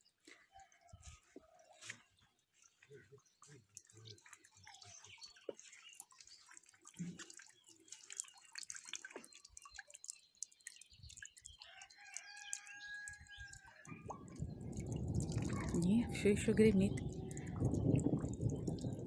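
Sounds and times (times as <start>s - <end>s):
faint rain dripping: 3.4s - 19.0s
rooster crowing: 11.8s - 14.0s
distant thunder rumble: 14.2s - 19.0s.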